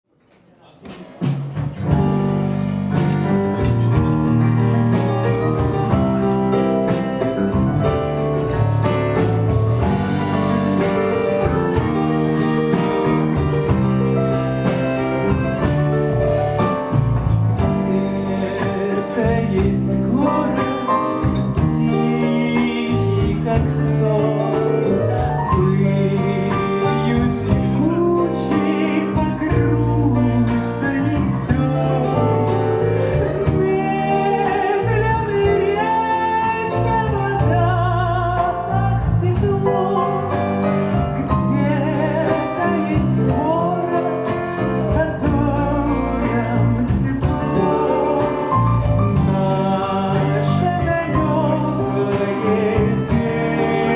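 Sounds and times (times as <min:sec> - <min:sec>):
drums: 0:00.4 - 0:53.9
bass: 0:00.9 - 0:53.9
grand piano: 0:01.6 - 0:53.9
button accordion: 0:08.3 - 0:17.5, 0:45.9 - 0:53.9
clarinet: 0:09.8 - 0:17.0.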